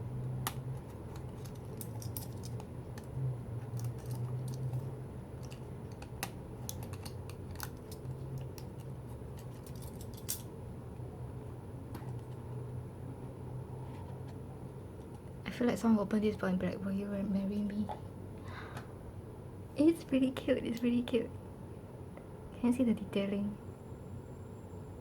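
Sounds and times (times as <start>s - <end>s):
steady low hum: 0.0s - 25.0s
jewellery box clicks and scratches: 0.8s - 10.4s.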